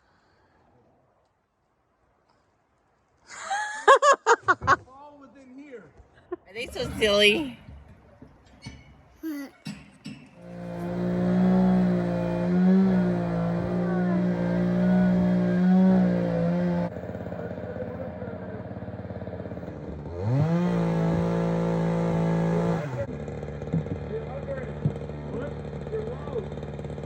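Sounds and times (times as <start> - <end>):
chainsaw cutting a tree: 10.4 - 27.0.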